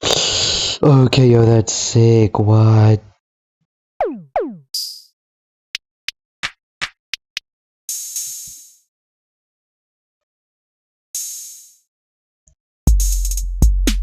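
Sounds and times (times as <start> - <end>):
electronic drum beat: 12.9 - 14.0.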